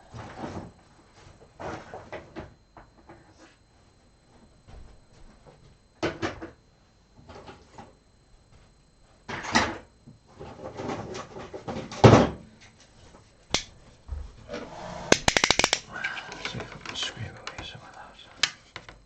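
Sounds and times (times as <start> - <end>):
objects scraping on workbench: 14.4 - 15.3
sharp click: 15.1 - 15.9.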